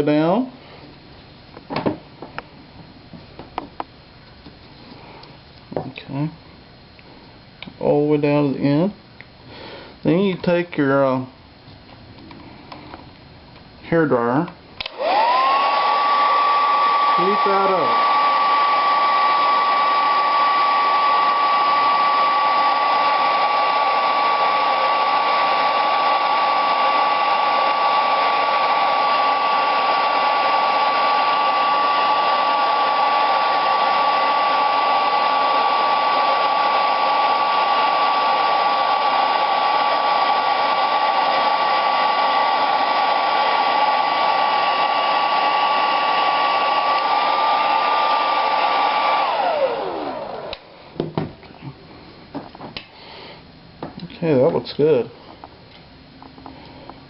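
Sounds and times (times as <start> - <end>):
hair dryer running: 14.8 - 51.4.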